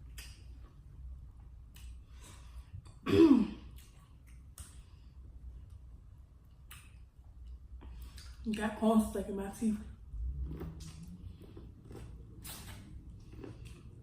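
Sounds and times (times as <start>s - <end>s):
mouth clicks and chewing: 0.0s - 0.8s, 1.6s - 3.0s, 3.7s - 5.1s, 6.4s - 8.4s, 10.4s - 14.0s.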